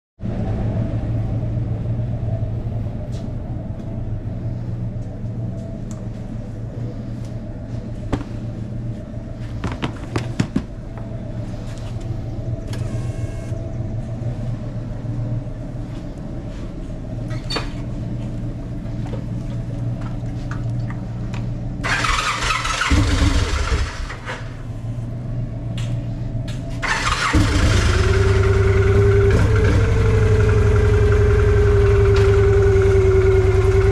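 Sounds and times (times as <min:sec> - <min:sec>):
steady high-pitched noise: 0:11.2 - 0:17.2
motorcycle engine idling: 0:26.8 - 0:33.9.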